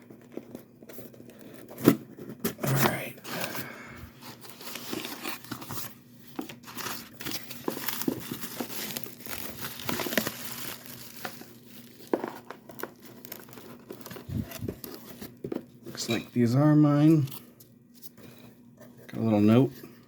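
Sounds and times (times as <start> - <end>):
packing material crinkling: 4.2 - 16.1.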